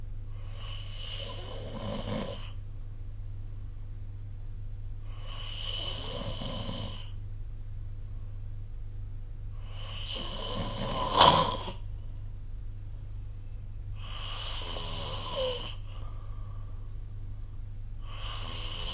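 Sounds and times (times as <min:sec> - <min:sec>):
steady low hum: 0:00.0 - 0:18.9
person snoring: 0:00.4 - 0:02.6, 0:05.1 - 0:07.2, 0:09.6 - 0:11.8, 0:14.0 - 0:15.9, 0:18.0 - 0:18.9.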